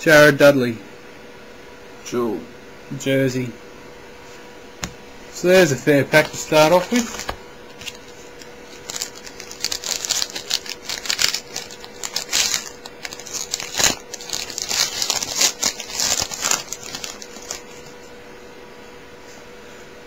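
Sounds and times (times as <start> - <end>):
wrapper crinkling and tearing: 6.2 - 18.0
sharp crack of wrapper: 8.7 - 17.8.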